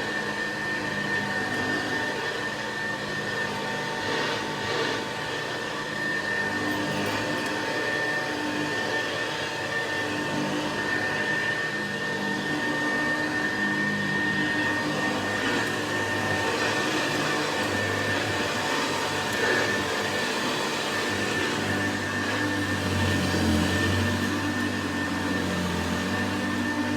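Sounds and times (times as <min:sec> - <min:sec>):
upright vacuum cleaner running: 0:00.0 - 0:26.9.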